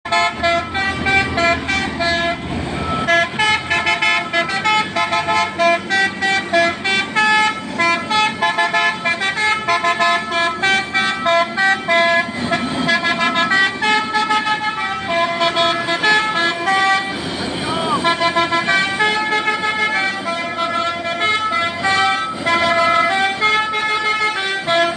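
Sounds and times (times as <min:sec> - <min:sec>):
musical air horn melody: 0:00.1 - 0:24.9.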